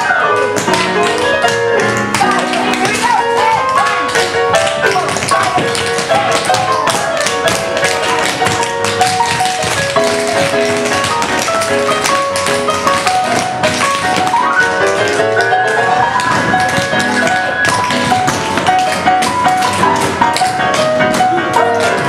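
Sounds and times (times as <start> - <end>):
recorded music melody: 0.0 - 22.0
tap shoes on hard floor: 0.0 - 22.0.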